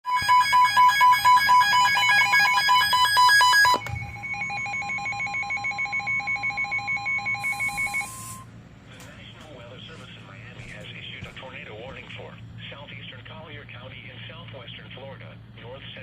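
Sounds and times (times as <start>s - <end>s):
alternating low and high beeps: 0.1s - 8.5s
rapid electronic beeping: 0.1s - 8.5s
steady alert tone: 0.1s - 8.5s.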